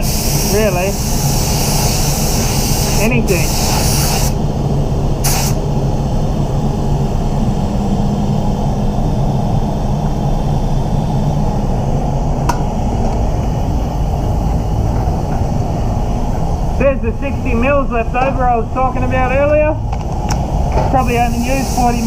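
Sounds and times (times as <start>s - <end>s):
spray gun hissing: 0.0s - 4.4s, 5.2s - 5.6s, 21.0s - 22.0s
ventilation humming: 0.0s - 22.0s.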